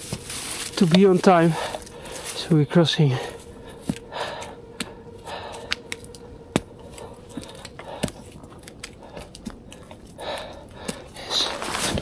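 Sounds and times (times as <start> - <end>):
faint steady hum: 0.0 - 12.0
panting breath: 8.9 - 11.4.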